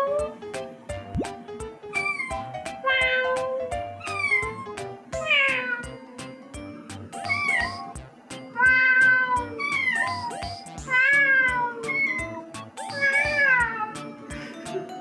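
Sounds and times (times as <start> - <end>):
background music with beat: 0.2 - 2.9, 4.8 - 8.8, 9.4 - 15.0
cat meowing: 1.9 - 6.0, 7.4 - 7.7, 8.6 - 10.2, 10.9 - 12.4, 13.0 - 14.0.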